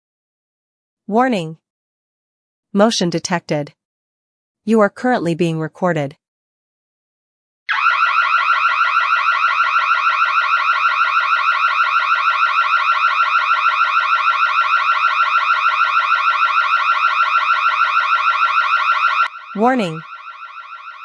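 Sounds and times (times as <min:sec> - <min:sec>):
warbling burglar alarm: 0:07.7 - 0:21.0.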